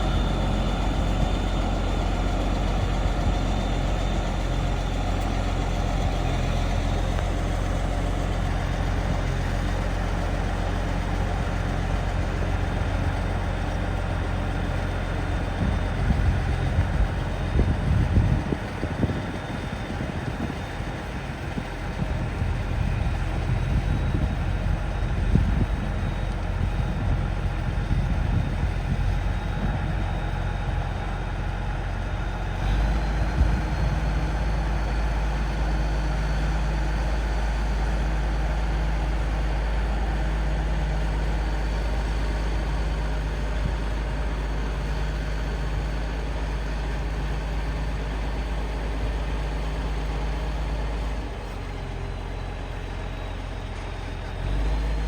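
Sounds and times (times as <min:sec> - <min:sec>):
bulldozer diesel engine rumbling: 0:00.0 - 0:55.0.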